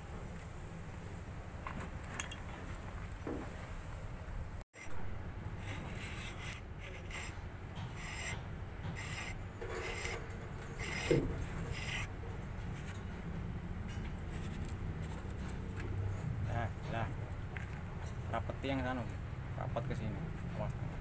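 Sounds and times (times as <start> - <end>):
steady low hum: 0.0 - 21.0
hand tool rasping and scraping: 5.6 - 13.0.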